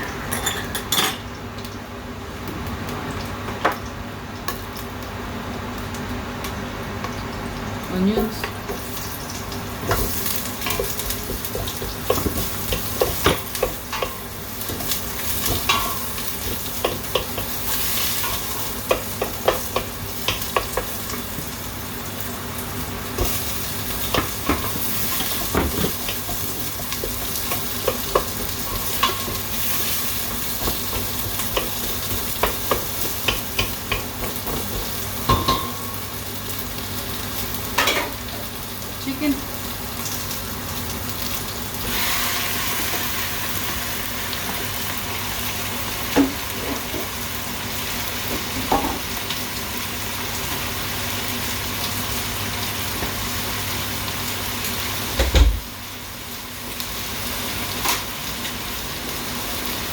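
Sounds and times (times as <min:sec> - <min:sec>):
onions sizzling in fat: 0:00.0 - 0:59.9.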